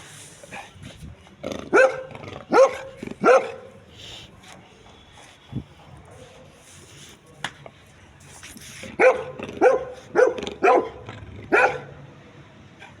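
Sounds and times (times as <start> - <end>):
dog barking: 1.7 - 3.8, 8.9 - 12.0.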